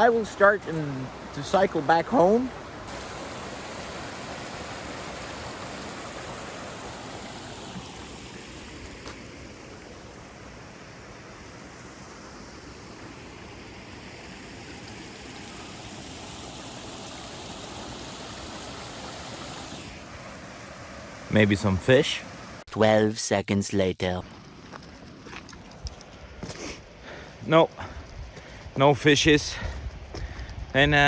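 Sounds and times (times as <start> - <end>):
river water flowing: 0.0 - 22.7.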